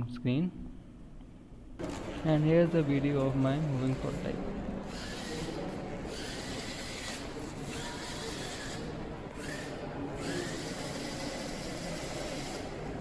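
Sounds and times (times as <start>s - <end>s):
small gear motors whirring: 4.9s - 12.8s.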